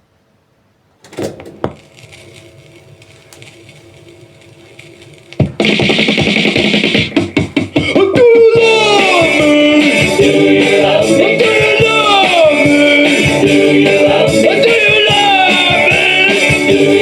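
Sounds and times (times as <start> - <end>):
steady hum: 0.8 - 17.0
thumps: 1.0 - 2.2
record crackle and clicks: 1.0 - 7.9
loud music: 5.4 - 17.0.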